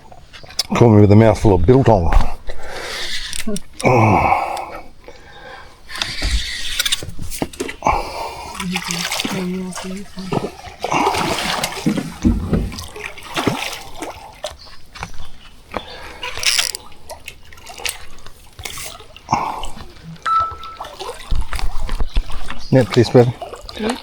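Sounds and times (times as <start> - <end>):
water splashing and trickling: 0.0 - 24.0.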